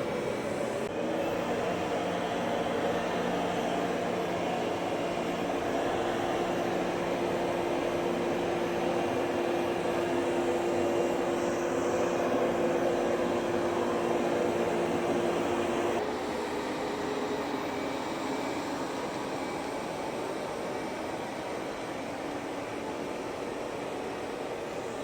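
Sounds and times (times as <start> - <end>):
robot vacuum cleaner humming: 0.0 - 16.1.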